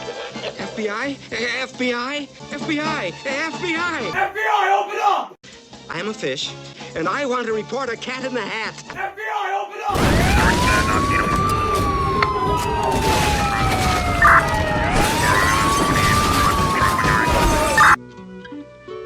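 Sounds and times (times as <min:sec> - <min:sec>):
loud noisy din: 0:09.9 - 0:18.0
police siren wailing: 0:09.9 - 0:18.0
sharp bangs: 0:09.9 - 0:18.0.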